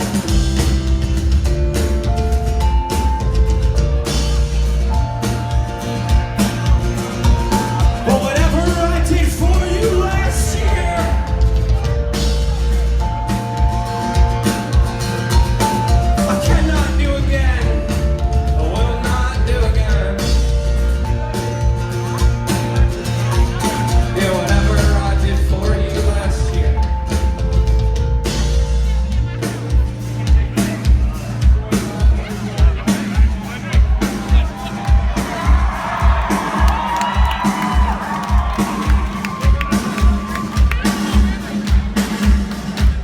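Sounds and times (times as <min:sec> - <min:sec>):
live rock band playing: 0:00.0 - 0:43.0
person singing: 0:07.8 - 0:11.9, 0:16.2 - 0:20.6, 0:23.7 - 0:27.4.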